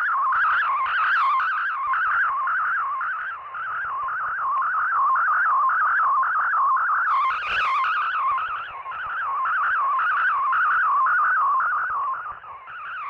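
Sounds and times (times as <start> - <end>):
warbling radio data tone: 0.0 - 13.0.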